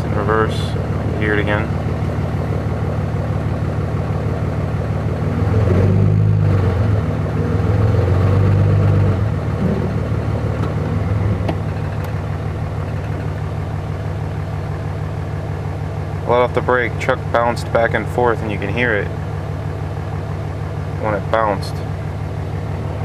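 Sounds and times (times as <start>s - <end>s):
diesel engine running: 0.0s - 23.0s
engine knocking: 11.4s - 15.4s.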